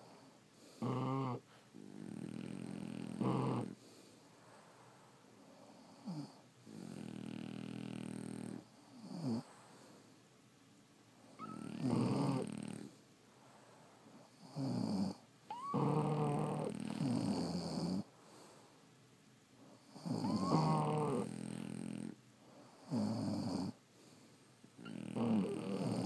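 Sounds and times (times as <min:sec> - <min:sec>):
dogs snoring: 0:00.0 - 0:04.1, 0:05.4 - 0:10.0, 0:11.2 - 0:13.1, 0:14.1 - 0:18.6, 0:19.6 - 0:24.2, 0:24.8 - 0:26.0.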